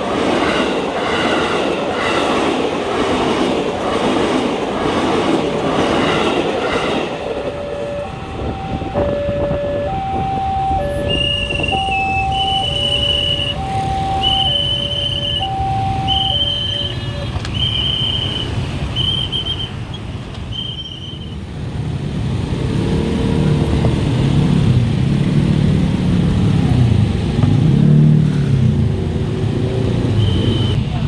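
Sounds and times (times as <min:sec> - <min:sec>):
level crossing beeps: 0:08.0 - 0:18.0
vehicle engines revving: 0:21.3 - 0:31.0.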